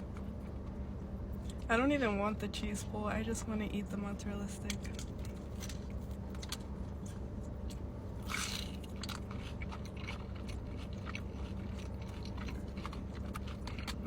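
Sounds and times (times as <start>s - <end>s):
low hum: 0.0s - 14.0s
crunchy chewing: 4.6s - 14.0s.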